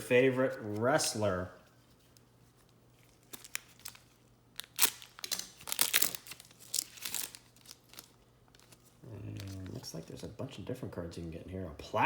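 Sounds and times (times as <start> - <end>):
wrapper tearing and crinkling: 3.0 - 9.9.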